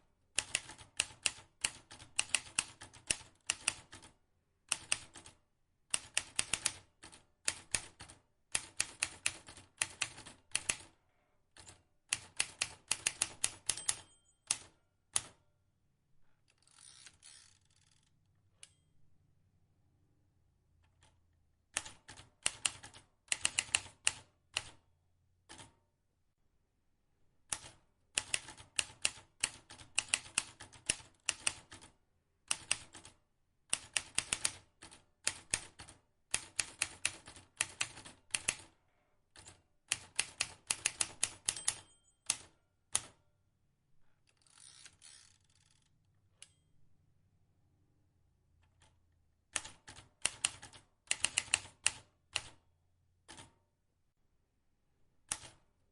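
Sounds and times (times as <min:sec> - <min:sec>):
manual typewriter key strikes: 0:12.2 - 0:15.3, 0:40.0 - 0:43.1.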